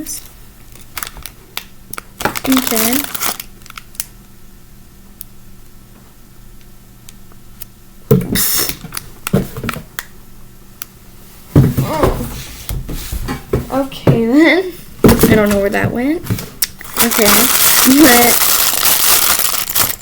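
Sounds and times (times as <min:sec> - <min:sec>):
plastic packaging rustle: 0:00.7 - 0:04.1, 0:16.8 - 0:20.0.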